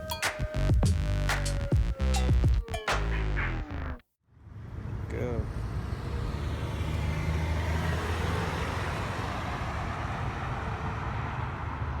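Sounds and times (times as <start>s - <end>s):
road noise: 4.4s - 12.0s.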